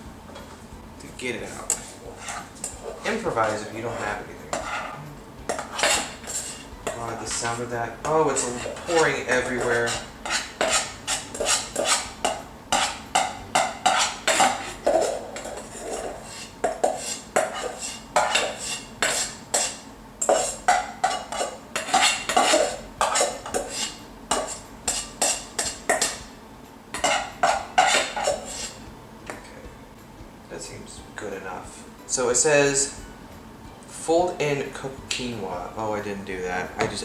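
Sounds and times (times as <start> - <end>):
metal knife scraping a pan: 1.5 - 26.3, 26.9 - 28.9.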